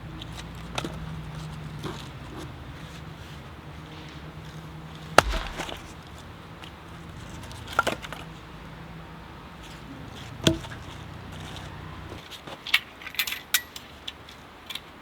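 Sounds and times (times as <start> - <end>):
wood being chopped: 5.2 - 6.0.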